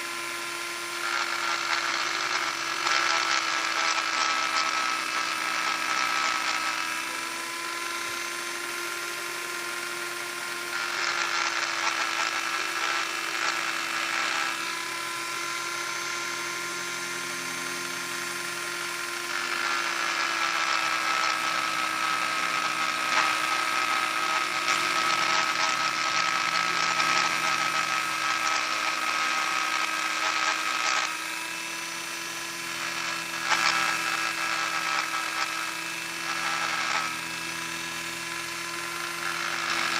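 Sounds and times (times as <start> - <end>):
rotary tool whining: 0.0 - 39.9.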